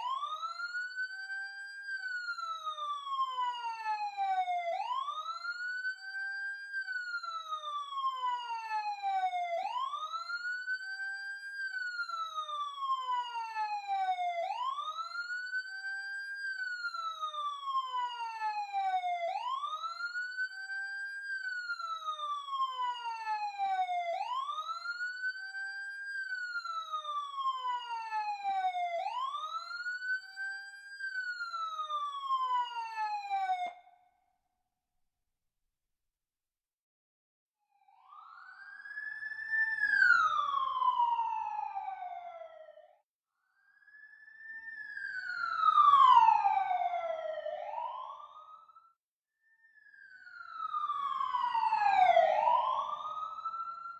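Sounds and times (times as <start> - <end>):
ambulance siren wailing: 0.0 - 33.9, 37.9 - 43.0, 43.8 - 49.0, 50.0 - 53.9.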